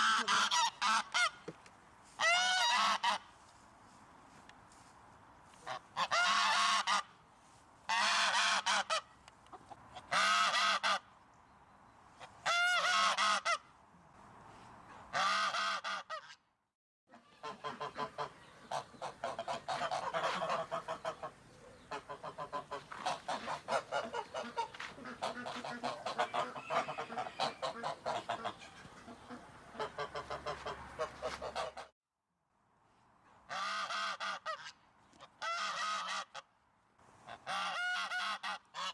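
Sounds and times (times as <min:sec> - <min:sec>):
goose honking: 0:00.0 - 0:01.4, 0:02.2 - 0:03.3, 0:05.6 - 0:07.2, 0:07.9 - 0:11.1, 0:12.2 - 0:13.6, 0:15.1 - 0:16.4, 0:17.1 - 0:31.9, 0:33.5 - 0:36.5, 0:37.3 - 0:38.9.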